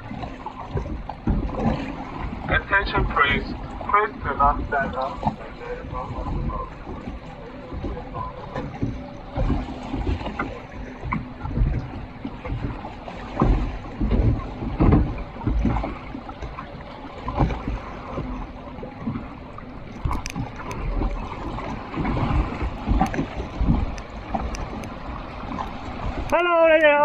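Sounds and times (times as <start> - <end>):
low thumps and rumble: 0.0 - 26.5
water sloshing and rushing: 0.0 - 27.0.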